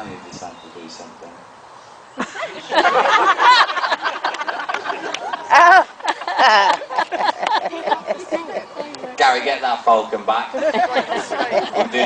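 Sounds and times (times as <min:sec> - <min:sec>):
crowd laughing and chattering: 0:02.2 - 0:12.0.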